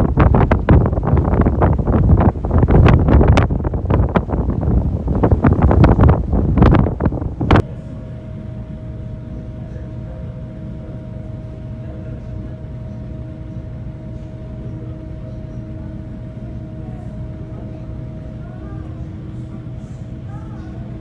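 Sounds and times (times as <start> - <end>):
wind gust on microphone: 0.0 - 7.7
ferry machinery hum: 0.0 - 21.0.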